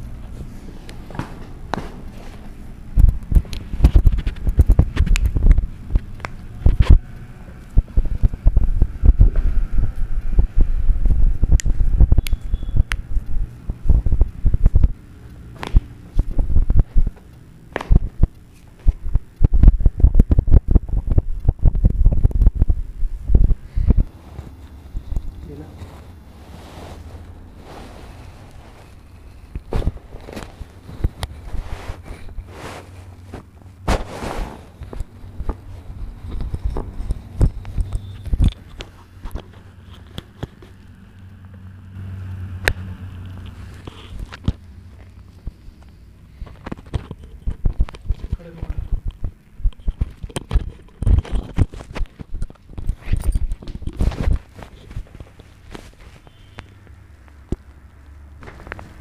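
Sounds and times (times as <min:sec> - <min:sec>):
steady low hum: 0:00.0 - 0:59.0
dull low thumps: 0:02.9 - 0:15.0, 0:15.7 - 0:17.2, 0:17.9 - 0:24.1.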